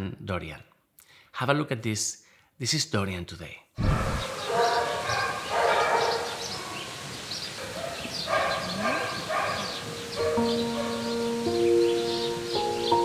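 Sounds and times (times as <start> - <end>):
dog barking: 3.8 - 11.5.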